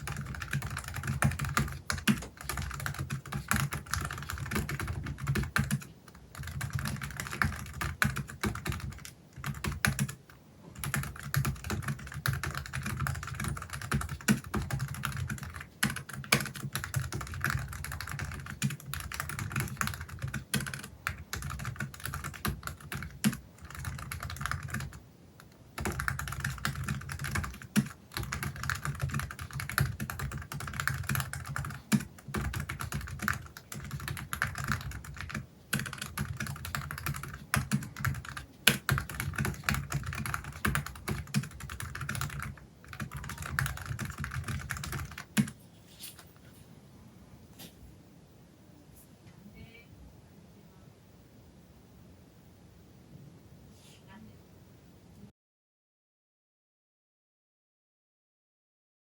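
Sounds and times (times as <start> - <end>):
fast typing on keyboard: 0.0 - 45.6.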